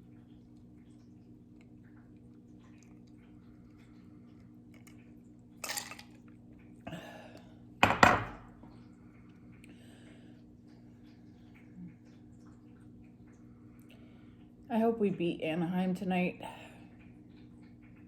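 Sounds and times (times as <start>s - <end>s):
ice clinking in a glass: 5.6s - 6.2s
glass knocking on hard surface: 7.8s - 8.4s.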